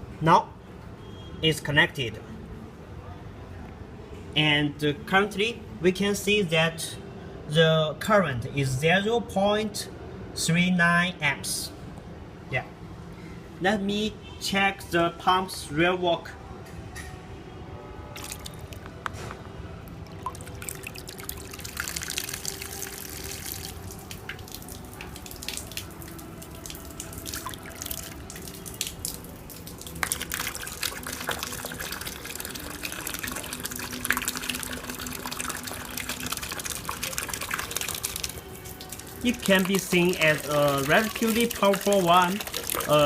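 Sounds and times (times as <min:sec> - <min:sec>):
water splashing: 0:18.2 - 0:19.2, 0:19.9 - 0:43.0.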